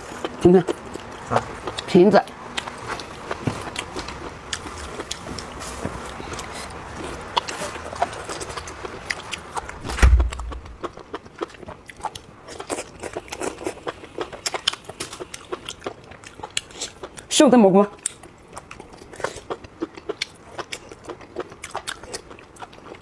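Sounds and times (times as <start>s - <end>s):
loud deep thump: 9.8s - 10.9s.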